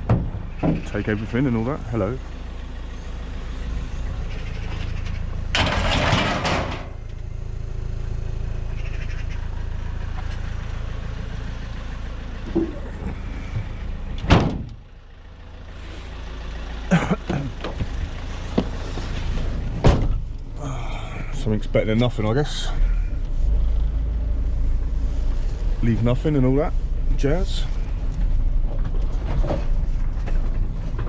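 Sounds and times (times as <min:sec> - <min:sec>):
vehicle engine running: 0:00.0 - 0:31.0
sharp knocks and bangs: 0:05.5 - 0:07.0, 0:13.6 - 0:14.8.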